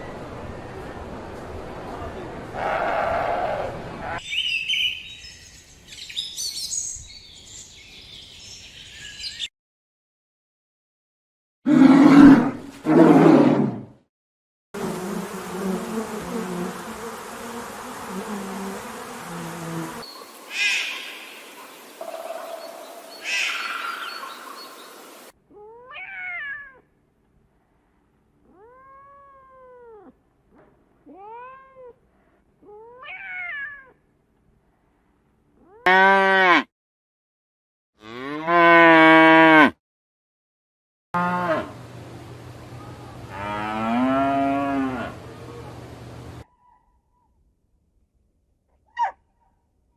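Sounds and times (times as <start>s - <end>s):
noisy animal sound: 2.5s - 4.3s, 18.2s - 26.8s
cat meowing: 25.6s - 26.8s, 32.7s - 33.9s
long meow-like cries: 25.6s - 26.8s, 32.7s - 33.9s.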